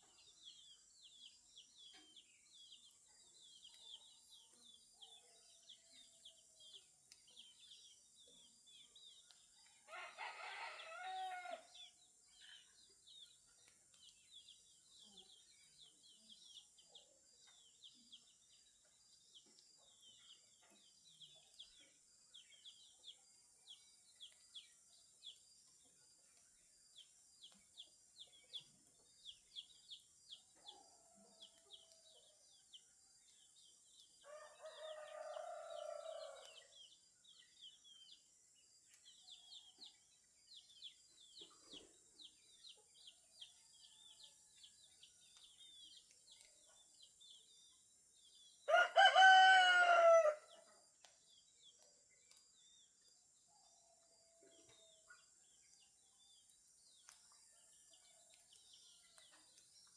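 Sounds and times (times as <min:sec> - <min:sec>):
small birds chirping: 0:00.0 - 0:59.9
rooster crowing: 0:09.9 - 0:11.7, 0:48.7 - 0:50.5.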